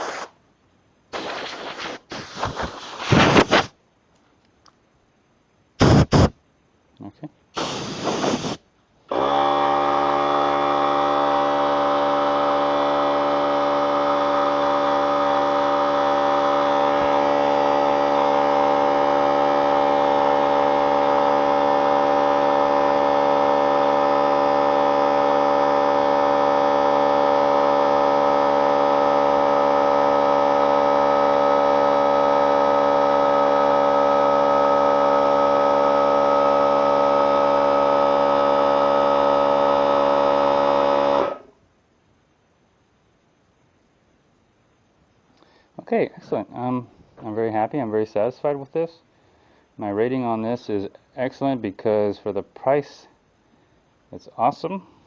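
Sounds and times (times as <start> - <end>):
air compressor running: 1.1 - 3.7, 5.8 - 6.4, 7.6 - 41.5.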